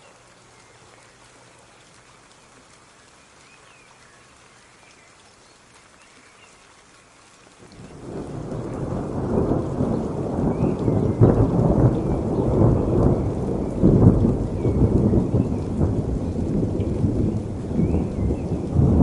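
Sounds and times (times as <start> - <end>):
steady rain: 0.0 - 19.0
thunder rumbling: 7.7 - 19.0.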